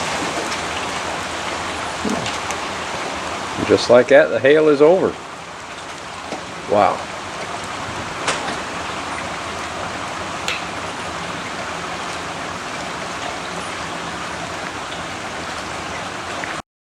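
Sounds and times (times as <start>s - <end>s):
rain hissing: 0.0s - 16.6s
running water: 0.0s - 16.6s
water drop ticking: 10.4s - 11.1s.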